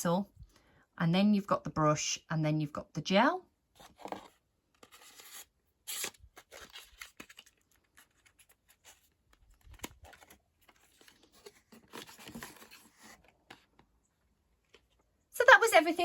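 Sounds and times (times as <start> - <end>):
packaging rustling and crinkling: 3.8 - 14.0.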